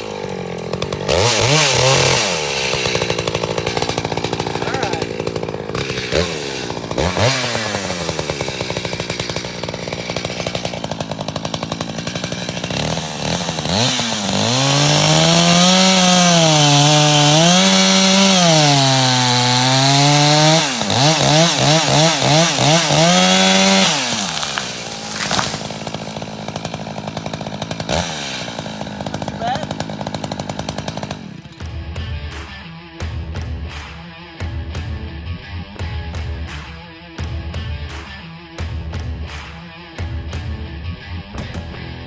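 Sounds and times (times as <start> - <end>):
chainsaw cutting wood: 0.0 - 31.8
chainsaw engine: 0.0 - 32.4.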